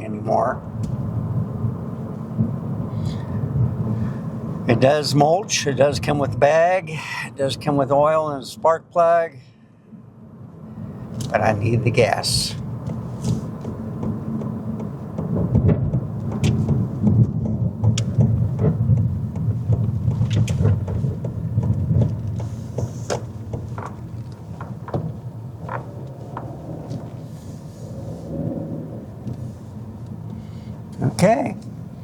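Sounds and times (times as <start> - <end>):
car engine and road rumble: 0.0 - 32.0
light clicks and knocks: 12.6 - 27.2.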